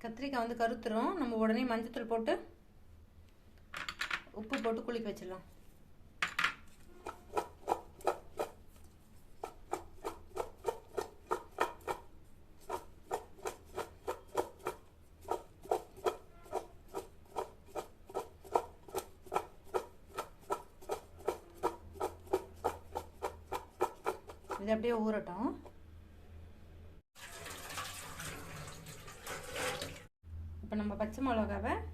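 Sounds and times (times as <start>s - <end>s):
vegetable pieces mixed by hand: 6.8s - 24.8s.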